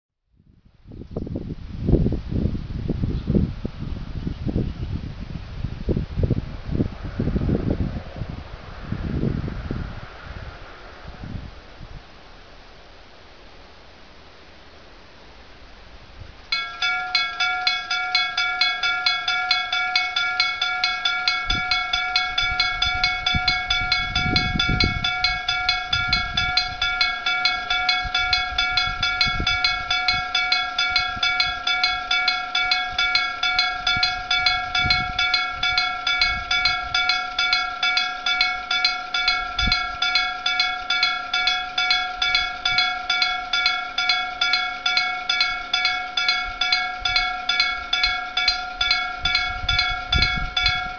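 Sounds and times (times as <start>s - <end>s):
low rumble of freight train: 0.8s - 50.9s
faint steady hum: 5.9s - 50.9s
gong level-crossing warning bell: 16.5s - 50.9s.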